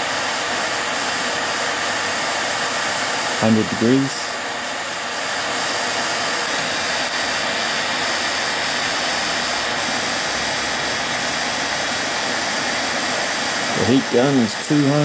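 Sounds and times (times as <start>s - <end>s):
hot air gun blowing: 0.0s - 15.0s.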